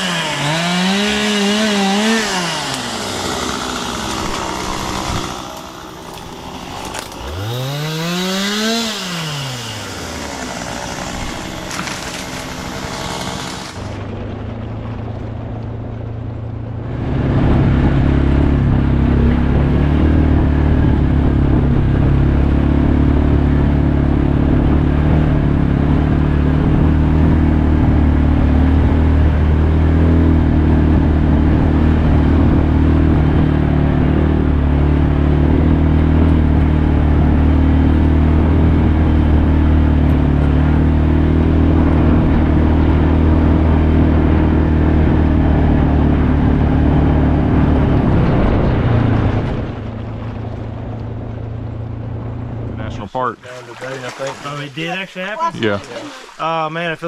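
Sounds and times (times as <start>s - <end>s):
chainsaw revving: 0.0s - 14.0s
small engine running steadily: 0.0s - 56.3s.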